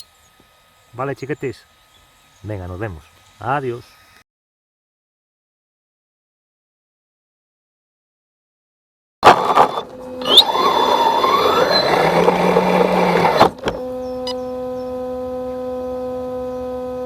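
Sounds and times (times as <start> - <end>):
electronic drone of held tones: 9.7 - 17.0.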